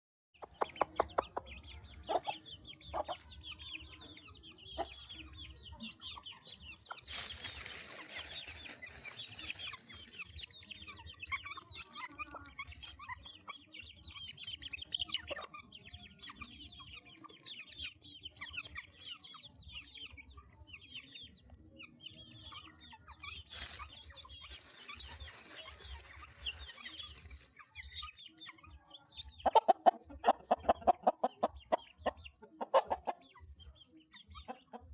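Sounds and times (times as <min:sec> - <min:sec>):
low clucks: 0:00.4 - 0:01.5
chicks peeping: 0:00.4 - 0:34.9.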